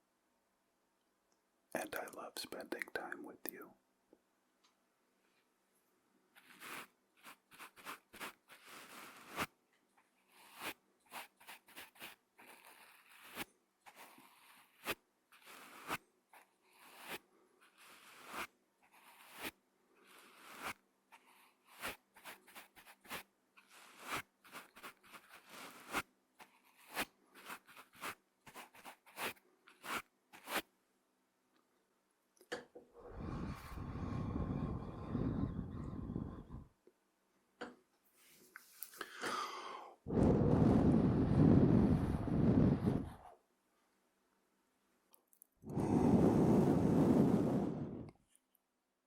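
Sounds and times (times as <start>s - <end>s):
brush sweeping microphone: 6.4s - 9.5s, 10.3s - 30.7s, 33.0s - 36.7s, 40.1s - 43.4s, 45.7s - 48.1s.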